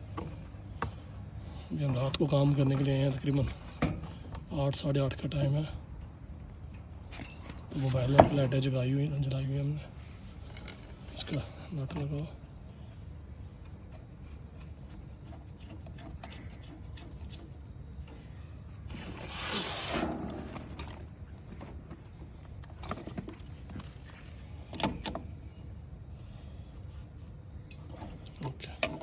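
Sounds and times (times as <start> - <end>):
metal nut clicking and scraping: 13.6 - 17.6.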